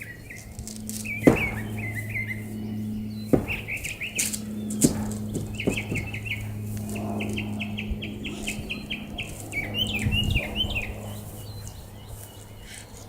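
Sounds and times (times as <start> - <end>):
songbird chirping: 0.0 - 13.0
steady low hum: 0.0 - 13.0.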